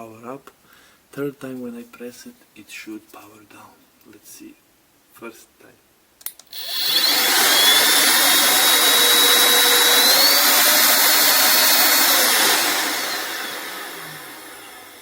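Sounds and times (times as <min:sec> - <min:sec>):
vacuum cleaner motor whining: 0:06.5 - 0:15.0.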